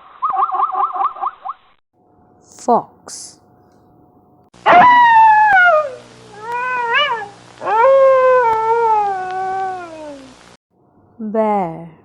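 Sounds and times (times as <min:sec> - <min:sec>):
fox screaming: 0:04.6 - 0:10.3.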